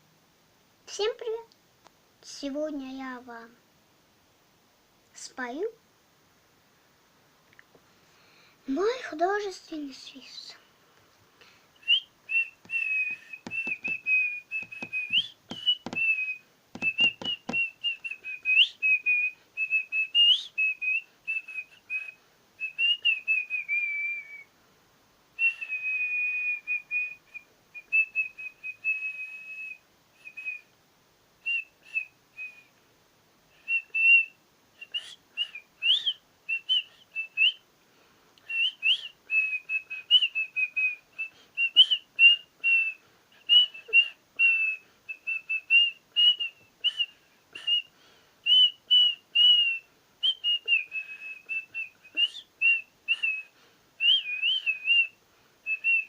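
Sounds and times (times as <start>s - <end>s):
person whistling warbling line: 11.9s - 18.7s
faint clicks: 12.6s - 16.1s.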